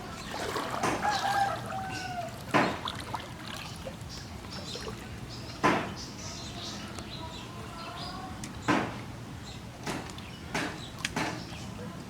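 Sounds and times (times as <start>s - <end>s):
water splashing: 0.0s - 5.9s.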